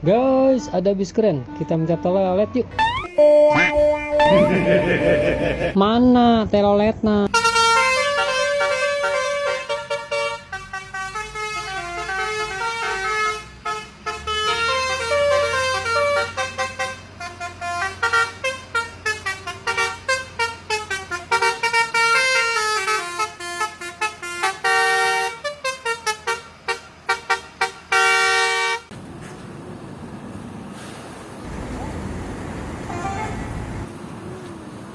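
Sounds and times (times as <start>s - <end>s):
multi-tone bus horn melody: 1.4s - 5.8s, 7.3s - 28.9s
bus engine running low: 3.5s - 5.8s, 7.4s - 34.9s.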